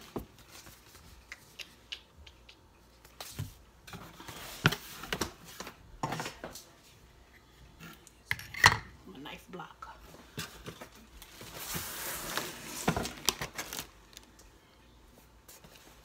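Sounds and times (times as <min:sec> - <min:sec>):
packaging rustling: 0:10.6 - 0:14.3.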